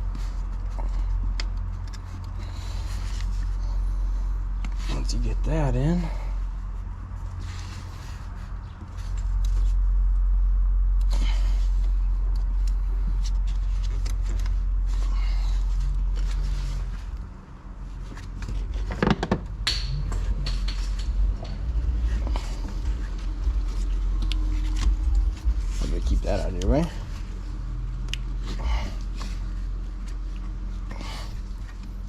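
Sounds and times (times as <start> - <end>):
loud low rumble: 0.0 - 32.0
clunks and scrapes of pipe: 18.2 - 26.0.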